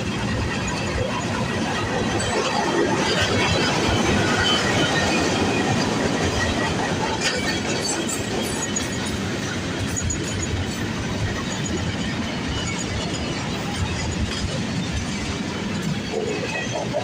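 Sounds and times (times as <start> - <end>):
train wheels clattering over track: 0.0 - 17.0
wheel squeal: 9.8 - 17.0.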